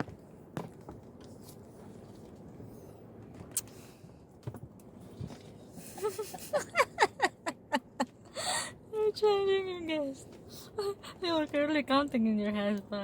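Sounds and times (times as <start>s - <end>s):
person giggling: 5.9s - 8.1s.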